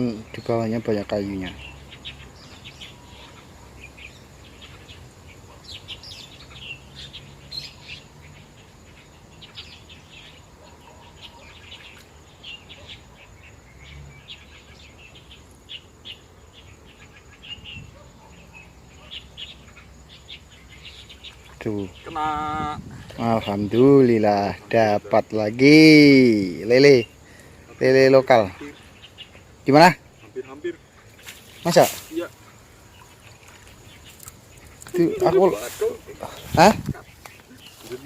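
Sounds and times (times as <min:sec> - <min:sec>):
birds chirping: 0:00.0 - 0:38.0.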